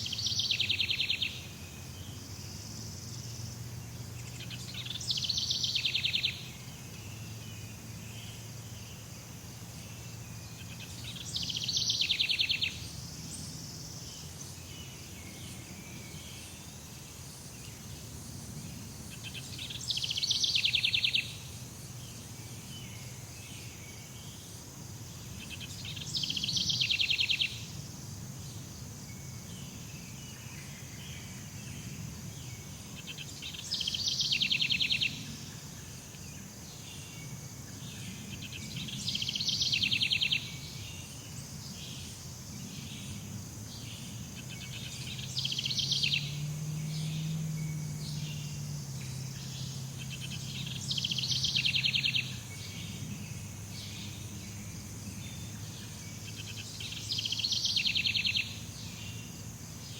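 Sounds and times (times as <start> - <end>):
high insect drone: 0.0 - 59.9.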